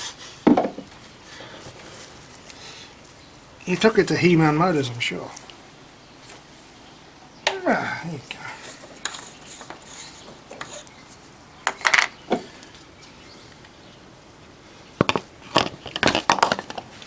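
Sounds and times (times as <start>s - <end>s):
hard objects clicking and knocking: 11.6s - 12.5s, 15.0s - 16.9s.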